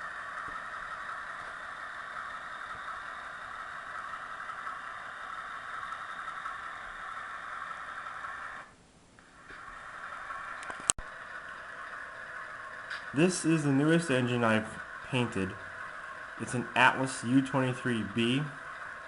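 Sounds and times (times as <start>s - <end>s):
model locomotive diesel engine sound: 0.0s - 19.0s.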